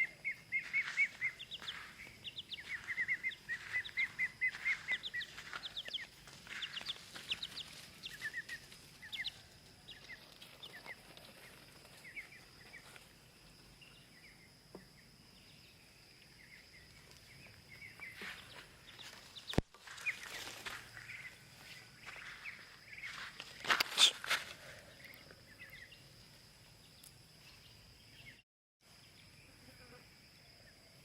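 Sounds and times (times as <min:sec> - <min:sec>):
chicks peeping: 0:00.0 - 0:11.1, 0:17.7 - 0:23.2.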